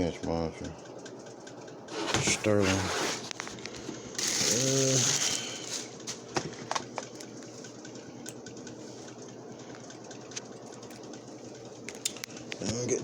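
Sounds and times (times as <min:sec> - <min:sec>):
clicks and rustling from handling: 0:01.0 - 0:11.2.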